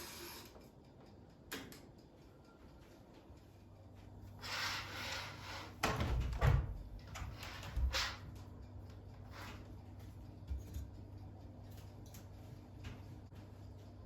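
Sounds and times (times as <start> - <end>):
sliding rubbing noise: 4.4 - 5.8.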